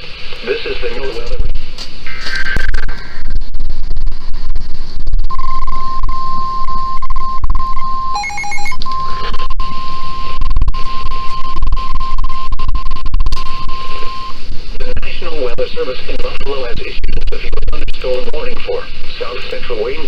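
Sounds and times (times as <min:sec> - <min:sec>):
radio hiss: 0:00.0 - 0:05.4, 0:08.8 - 0:11.0, 0:13.2 - 0:20.0
steady warning beep: 0:05.3 - 0:14.4.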